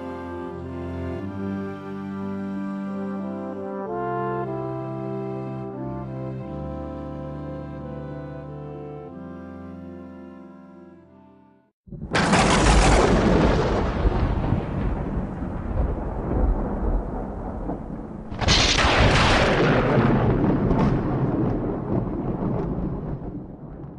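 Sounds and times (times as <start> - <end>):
loud rumbling crashes: 11.9 - 23.9.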